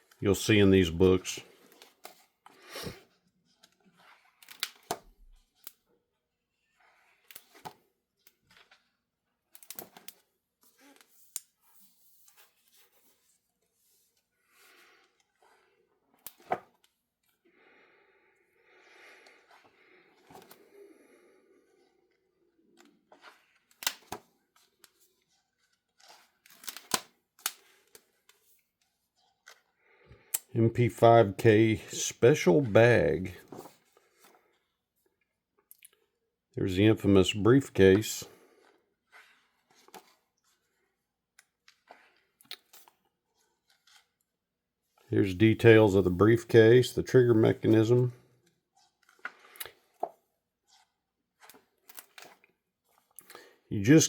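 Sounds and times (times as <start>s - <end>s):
book pages turning: 0.0s - 17.4s, 18.8s - 34.9s, 36.8s - 54.0s
book pages swishing: 9.7s - 16.9s, 19.3s - 20.7s, 22.8s - 29.7s, 31.7s - 34.4s, 38.6s - 40.8s, 41.8s - 44.2s.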